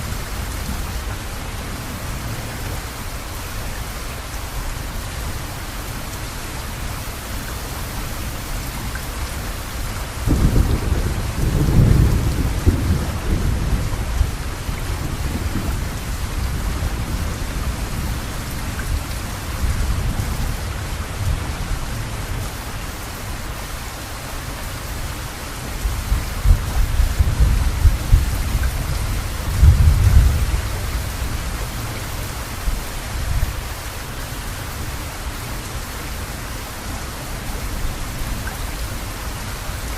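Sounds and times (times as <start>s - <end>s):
steady rain: 0.0s - 39.9s
thunder rumbling: 10.1s - 22.4s, 25.8s - 33.6s.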